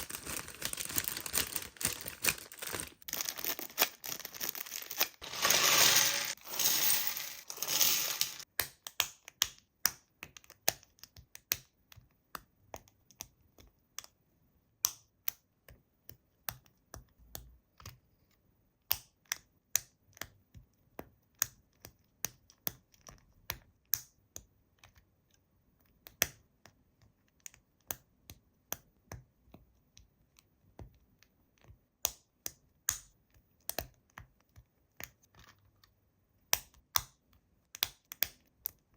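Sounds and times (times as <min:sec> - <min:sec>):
plastic packaging crinkling: 0:00.0 - 0:08.4.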